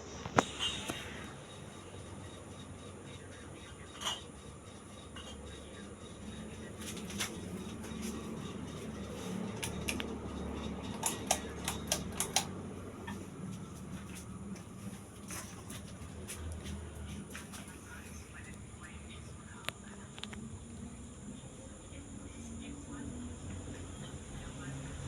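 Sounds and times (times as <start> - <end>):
ceiling fan humming: 0.0 - 25.0
sharp clicks: 10.9 - 12.6.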